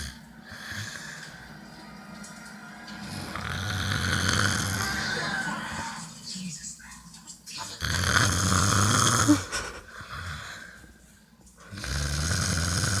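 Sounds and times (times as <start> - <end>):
person snoring: 0.0 - 1.3, 3.2 - 6.0, 7.8 - 10.7, 11.7 - 13.0.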